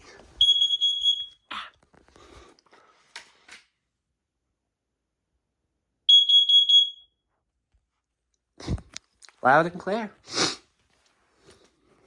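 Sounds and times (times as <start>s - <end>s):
shrill alarm beeps: 0.4s - 1.5s, 6.1s - 7.2s.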